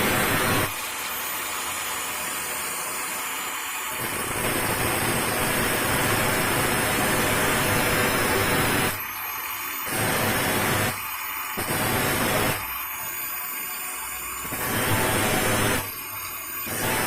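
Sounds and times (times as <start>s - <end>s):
angle grinder grinding metal: 14.5s - 17.0s.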